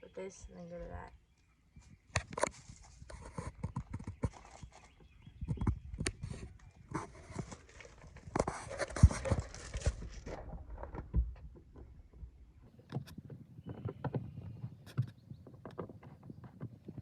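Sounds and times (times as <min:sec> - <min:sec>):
rustling handling noise: 0:02.2 - 0:05.1, 0:06.2 - 0:11.0.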